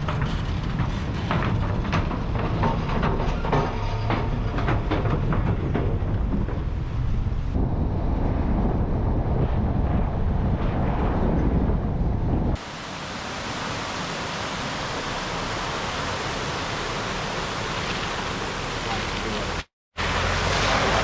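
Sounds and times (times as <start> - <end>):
metallic clanks and rattles: 0.0 - 7.1
ferry machinery rumbling: 0.0 - 12.6
wind on microphone: 4.8 - 19.6.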